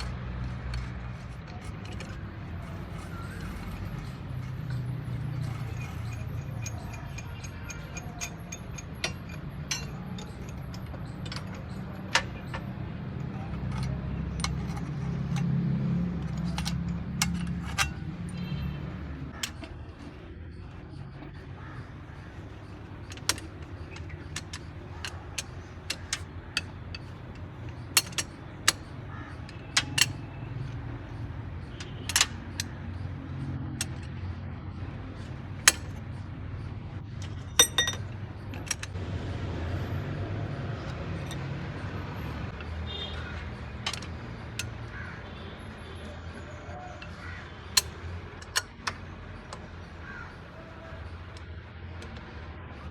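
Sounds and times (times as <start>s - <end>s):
metallic clinks of tools: 0.0s - 18.7s, 22.1s - 34.2s, 37.1s - 39.0s.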